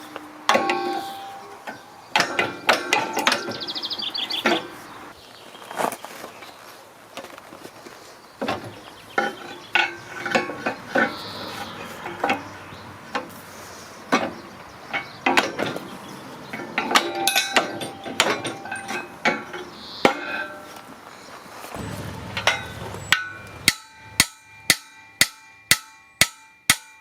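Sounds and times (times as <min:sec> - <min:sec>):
metal tools clanking: 0:00.0 - 0:03.7, 0:09.2 - 0:12.5, 0:16.5 - 0:20.8, 0:21.7 - 0:25.2.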